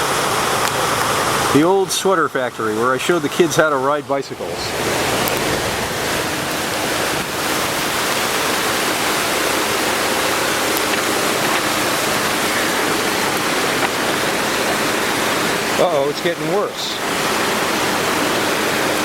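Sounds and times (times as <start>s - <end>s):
floodwater rushing: 4.2s - 7.6s.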